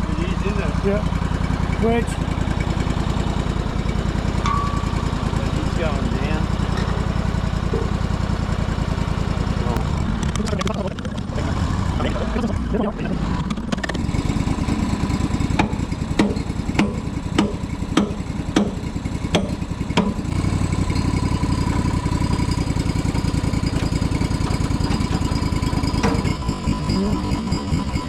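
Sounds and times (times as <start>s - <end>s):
engine idling: 0.0s - 28.0s
sharp knocks: 4.4s - 5.4s, 6.7s - 8.0s, 15.5s - 20.3s, 23.7s - 26.5s.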